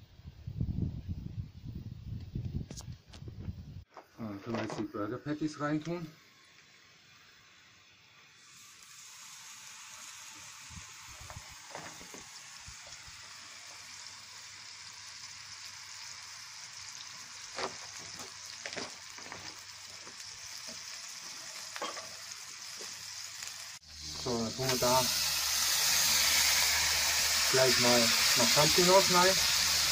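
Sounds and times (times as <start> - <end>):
patties sizzling in a pan: 8.2 - 29.9.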